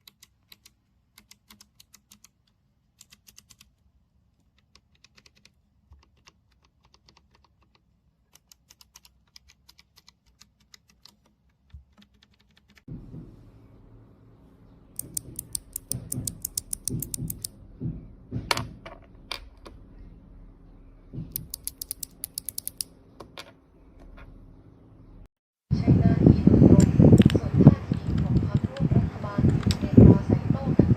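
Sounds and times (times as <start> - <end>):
typing on mechanical keyboard: 0.0 - 2.4, 3.0 - 3.7, 4.5 - 12.9, 15.0 - 17.5, 21.3 - 22.9
low hum: 12.9 - 30.9.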